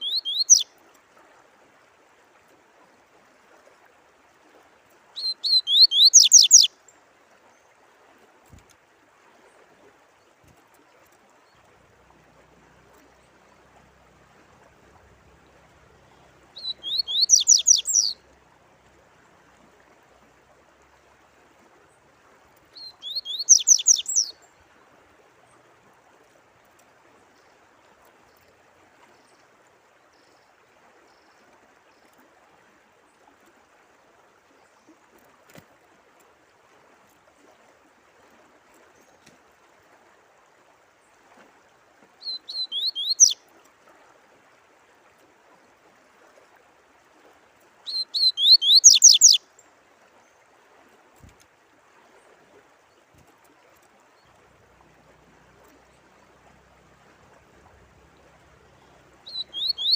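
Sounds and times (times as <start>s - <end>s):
songbird singing: 0.0s - 0.7s, 5.2s - 7.6s, 12.7s - 18.4s, 22.6s - 24.7s, 42.2s - 43.4s, 47.8s - 49.7s, 55.4s - 59.9s
faint running water: 0.0s - 59.9s.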